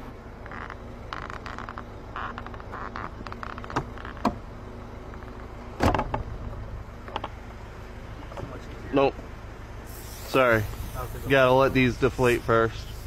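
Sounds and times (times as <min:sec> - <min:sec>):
short raspy bursts: 0:09.8 - 0:13.0.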